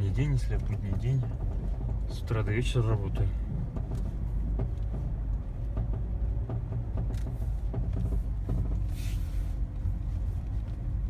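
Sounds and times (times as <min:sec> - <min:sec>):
road and engine rumble: 0:00.0 - 0:11.0
knocks from under car: 0:03.1 - 0:11.0.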